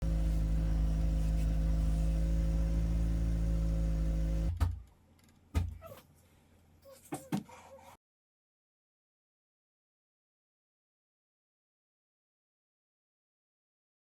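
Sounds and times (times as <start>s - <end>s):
car engine idling: 0.0s - 4.6s.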